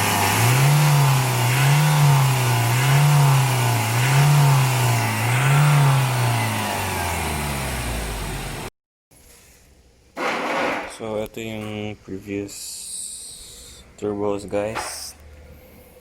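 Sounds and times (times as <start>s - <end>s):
diesel engine revving and idling: 0.0s - 8.7s.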